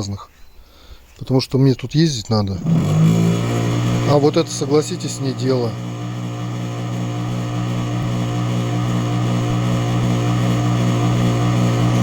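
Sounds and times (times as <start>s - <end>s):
electric motor humming: 2.6s - 12.0s.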